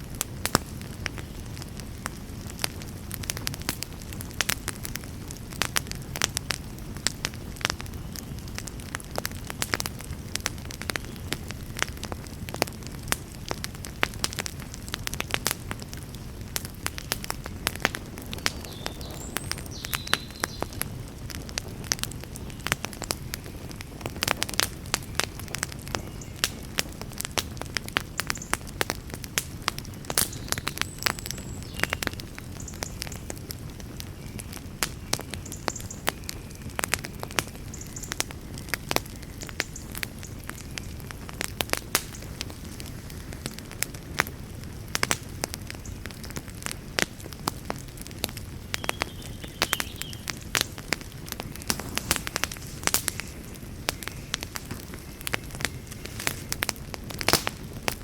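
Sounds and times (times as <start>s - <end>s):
fire crackles and pops: 0.0s - 58.0s
low rumble of flame: 0.0s - 58.0s.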